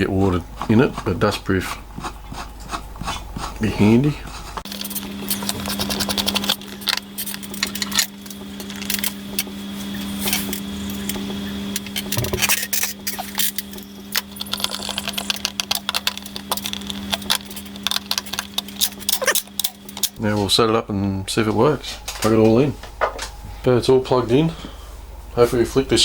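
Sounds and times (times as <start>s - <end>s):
steady low hum: 0.0s - 26.0s
metal hardware and tools clinking: 4.7s - 9.5s, 11.8s - 20.2s.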